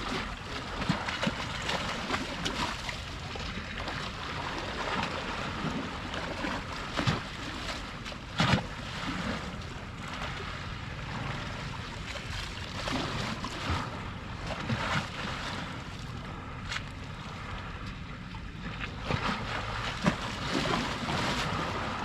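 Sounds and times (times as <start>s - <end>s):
low wind rumble: 0.0s - 22.0s
small waves lapping and splashing: 0.0s - 22.0s.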